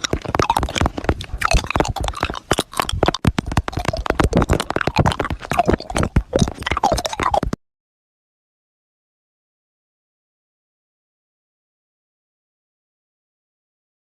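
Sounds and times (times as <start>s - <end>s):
hard candy clicking in mouth: 0.0s - 7.6s.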